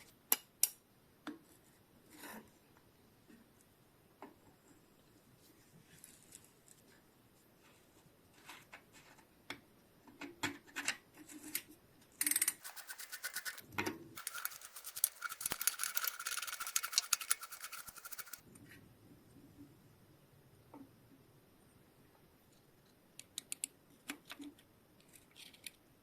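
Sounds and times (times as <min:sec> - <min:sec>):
scattered clicks and knocks: 0:12.2 - 0:18.4.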